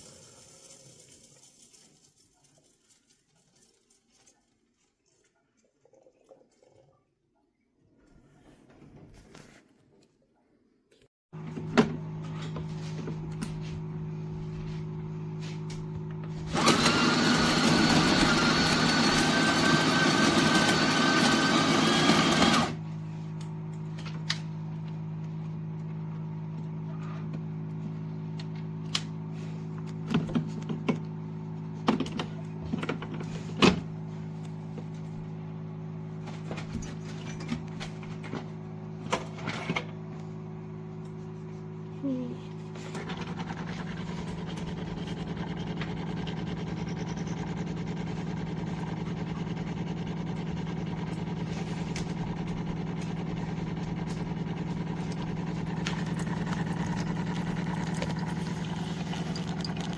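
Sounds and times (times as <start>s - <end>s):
espresso machine humming: 11.4s - 22.8s, 40.4s - 59.9s.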